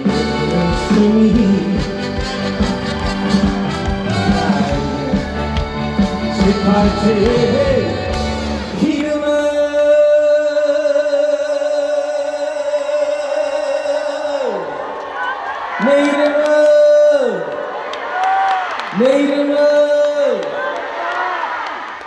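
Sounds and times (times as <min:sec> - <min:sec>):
live band playing: 0:00.0 - 0:09.4
person singing: 0:00.0 - 0:14.6.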